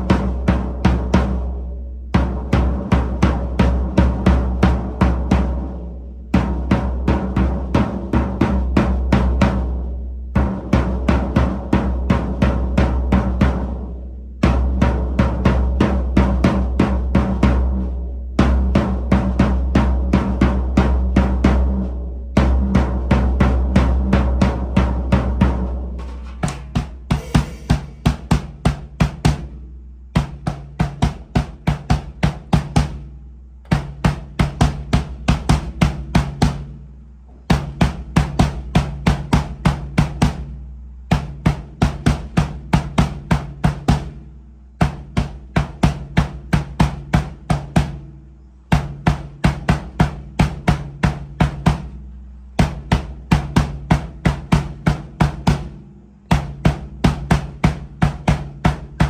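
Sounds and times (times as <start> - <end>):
low ringing drum tone: 22.3 - 28.4
drum kit playing quick strokes: 25.4 - 28.6.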